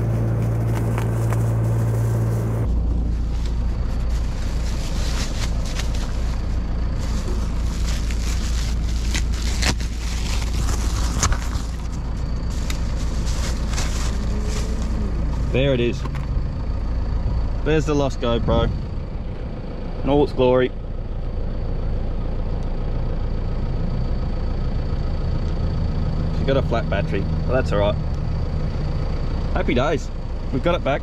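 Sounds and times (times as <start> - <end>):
idling vehicle engine hum: 0.0 - 31.0
cardboard box being torn open: 7.9 - 11.9.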